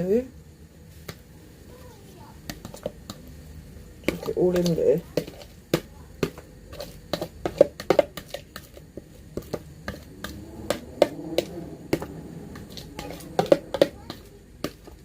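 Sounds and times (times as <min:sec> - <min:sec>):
ingredients scraped into pot: 0:02.4 - 0:15.0.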